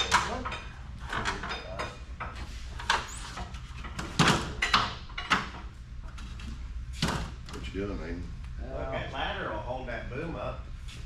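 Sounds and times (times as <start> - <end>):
sharp knocks and clanks: 0.0 - 7.7.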